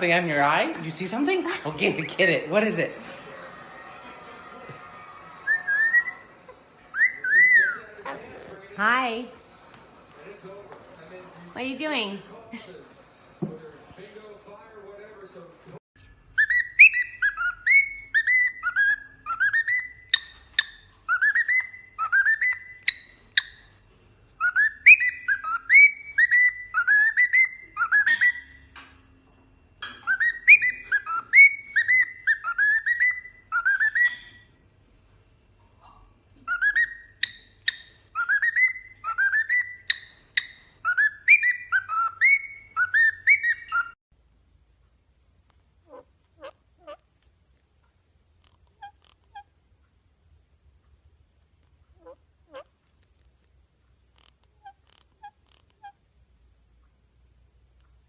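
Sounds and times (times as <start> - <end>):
pet bird whistling: 5.5 - 6.3, 6.9 - 7.9, 16.3 - 23.7, 24.4 - 28.6, 29.9 - 34.4, 36.4 - 44.0.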